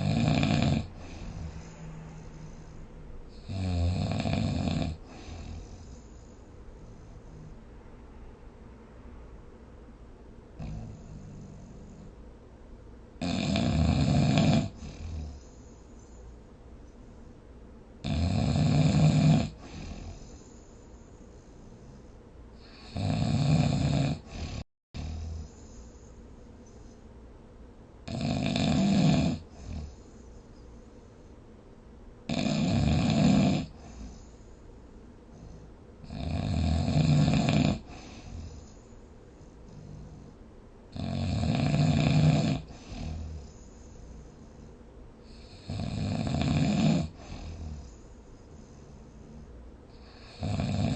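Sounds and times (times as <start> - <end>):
quiet breathing: 0.0 - 3.7, 4.8 - 8.6, 9.2 - 13.0, 14.4 - 18.1, 19.0 - 23.2, 24.0 - 27.8, 29.3 - 32.0, 33.4 - 36.3, 37.1 - 41.0, 42.5 - 50.9
person snoring: 0.0 - 5.9, 13.2 - 15.4, 18.0 - 20.3, 22.6 - 25.6, 28.1 - 30.0, 32.3 - 34.1, 35.4 - 38.6, 39.7 - 44.5, 45.3 - 47.9, 48.8 - 50.9.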